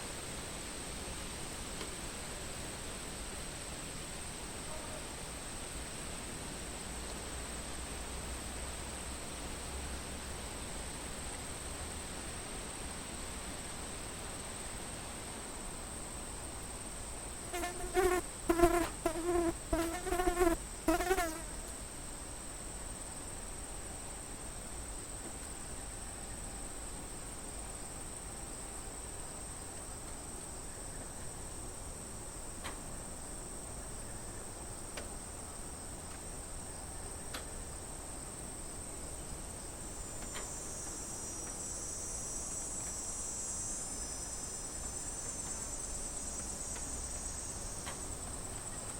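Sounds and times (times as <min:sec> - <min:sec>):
cicadas buzzing: 0:16.0 - 0:24.9, 0:27.2 - 0:48.9.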